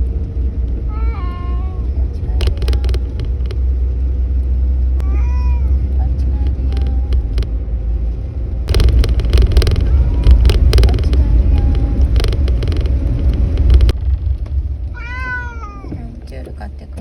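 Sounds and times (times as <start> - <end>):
car cabin rumble: 0.0 - 17.0
irregular clicking and rattling: 2.2 - 4.5, 5.9 - 7.7, 8.6 - 14.9.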